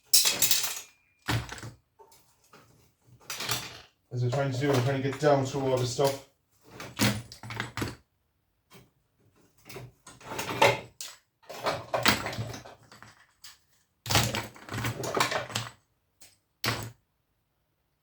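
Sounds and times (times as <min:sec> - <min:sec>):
metal coils clattering: 0:00.0 - 0:01.1.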